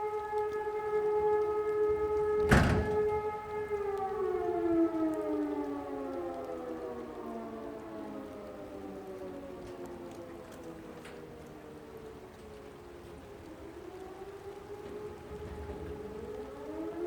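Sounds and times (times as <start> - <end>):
fire siren winding down: 0.0 - 17.0
loud thump: 2.4 - 3.1.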